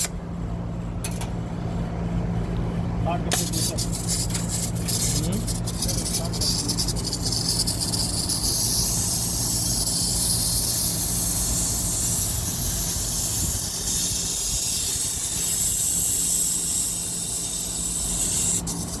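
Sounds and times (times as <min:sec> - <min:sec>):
low machine hum: 0:00.0 - 0:19.0.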